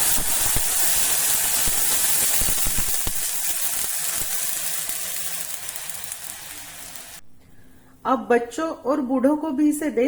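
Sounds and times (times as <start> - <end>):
water sizzling in hot oil: 0.0 - 7.2.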